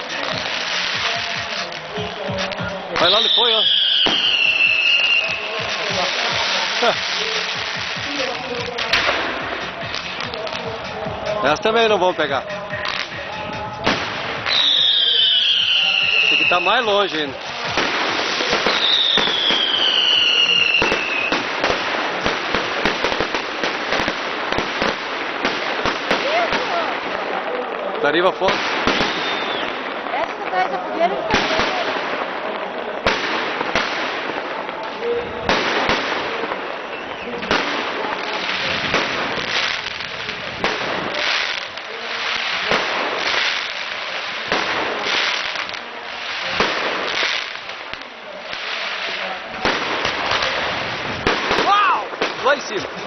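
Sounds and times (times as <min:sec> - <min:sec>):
fireworks crackling and banging: 0:00.0 - 0:53.0
firework whistle: 0:03.0 - 0:05.6, 0:14.4 - 0:16.9, 0:18.4 - 0:21.5, 0:28.8 - 0:30.0, 0:35.9 - 0:38.7.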